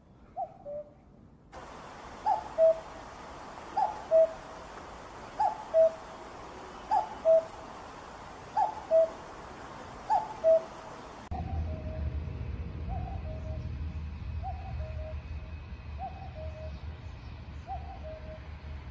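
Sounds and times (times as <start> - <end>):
cuckoo calling: 1.6 - 11.9.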